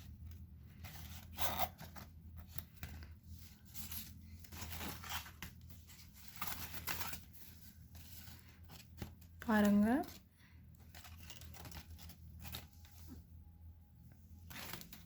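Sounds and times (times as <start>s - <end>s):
low steady hum: 0.0s - 15.0s
packaging rustling and tearing: 0.8s - 9.9s, 10.8s - 13.1s, 14.4s - 15.0s.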